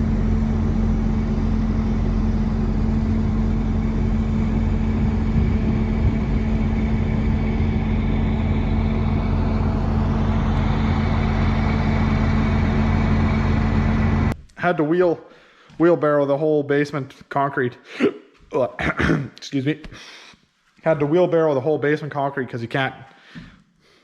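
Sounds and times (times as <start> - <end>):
pump truck engine droning: 0.0 - 14.4.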